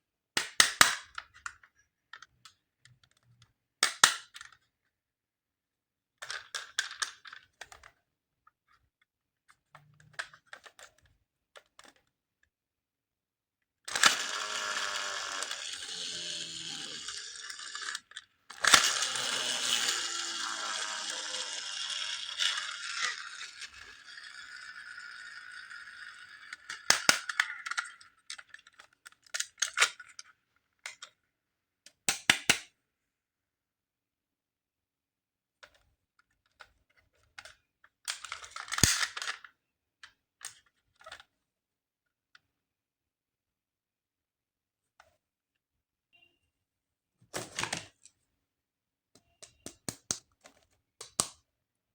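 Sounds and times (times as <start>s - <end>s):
plastic clicks and taps: 49.2s - 51.4s.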